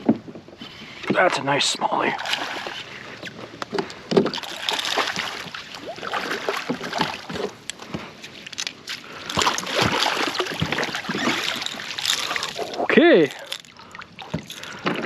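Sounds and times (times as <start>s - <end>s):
water splashing and sloshing: 0.0s - 15.0s
knocks against a boat: 3.6s - 4.4s.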